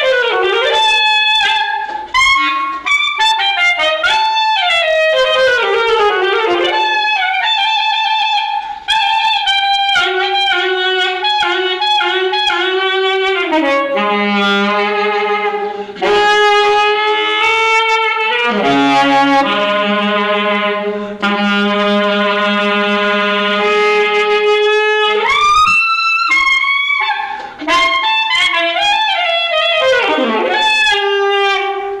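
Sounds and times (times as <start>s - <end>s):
saxophone playing: 0.0s - 32.0s.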